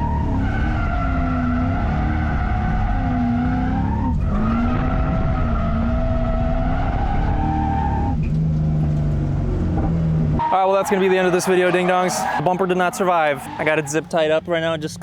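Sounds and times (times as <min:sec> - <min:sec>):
car engine running: 0:00.0 - 0:15.0
tyres squealing: 0:10.4 - 0:14.6.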